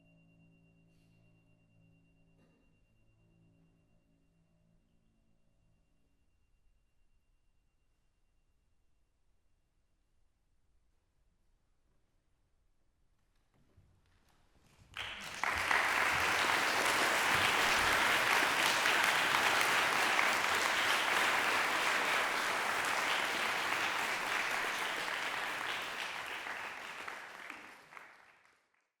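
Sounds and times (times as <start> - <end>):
audience applauding: 14.9 - 28.8.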